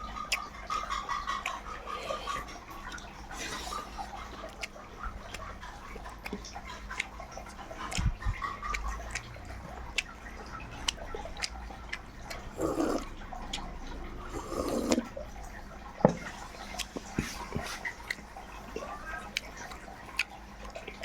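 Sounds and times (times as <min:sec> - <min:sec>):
wet chewing and lip-smacking: 0:00.0 - 0:21.0
mouth clicks: 0:00.3 - 0:15.1.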